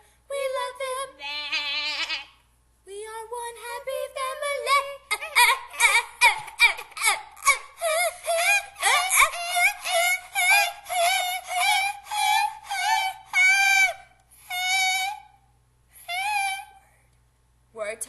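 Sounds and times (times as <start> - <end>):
high-pitched voice singing wordlessly: 0.3 - 1.6, 3.0 - 6.5, 7.5 - 15.2, 16.1 - 16.8.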